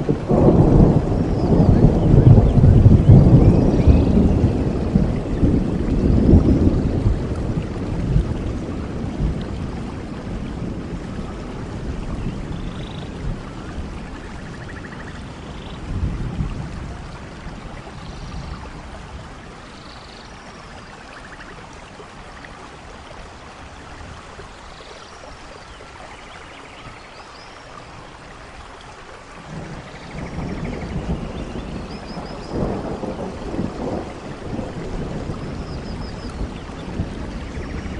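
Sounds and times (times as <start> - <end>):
low rolls of thunder: 0.0 - 19.6, 29.4 - 37.9
steady rain falling: 0.0 - 37.9.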